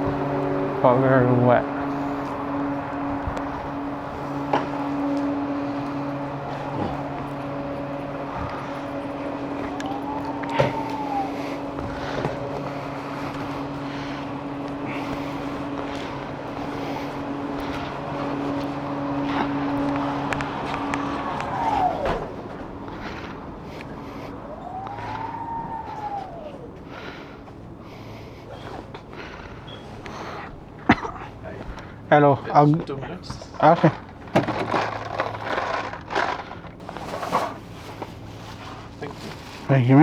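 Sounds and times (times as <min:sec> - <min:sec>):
road and wind noise: 0:00.0 - 0:40.0
vehicle hum with low drone: 0:00.0 - 0:40.0
tone sweeping up and down: 0:05.1 - 0:13.9, 0:23.9 - 0:26.9.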